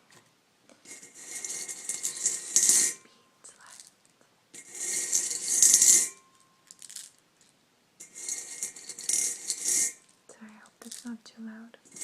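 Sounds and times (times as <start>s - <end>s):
jelly beans rattling in a container: 0.9s - 2.9s, 4.6s - 10.1s, 10.8s - 11.2s.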